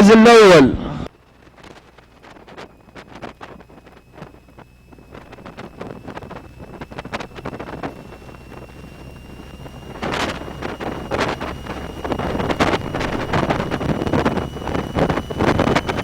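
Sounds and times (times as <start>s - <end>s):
wind buffeting microphone: 1.4s - 16.0s.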